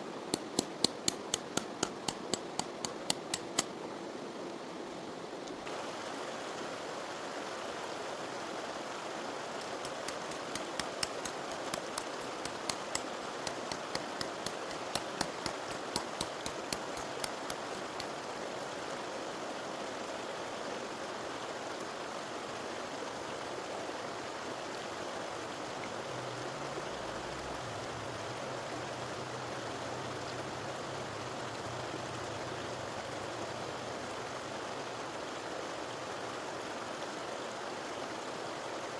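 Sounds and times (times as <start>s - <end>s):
river water flowing: 0.0s - 38.9s
sharp clicks: 0.3s - 3.7s, 9.6s - 18.1s.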